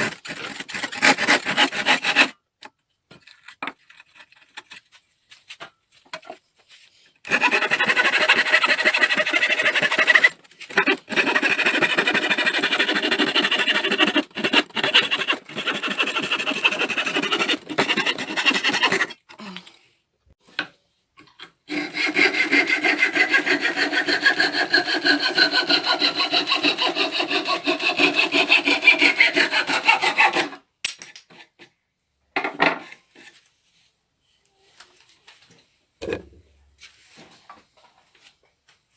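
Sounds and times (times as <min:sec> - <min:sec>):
saw cutting wood: 0:00.0 - 0:02.3, 0:07.3 - 0:19.2, 0:21.7 - 0:30.6.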